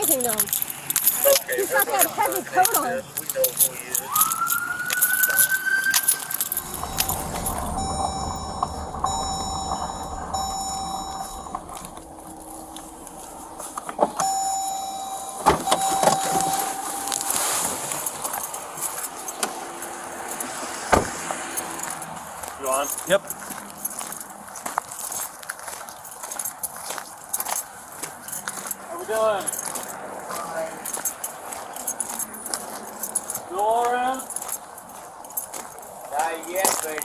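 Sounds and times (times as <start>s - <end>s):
gear clinking and clicking: 0.0s - 7.9s, 30.8s - 37.0s
electronic beep tone: 4.2s - 17.6s.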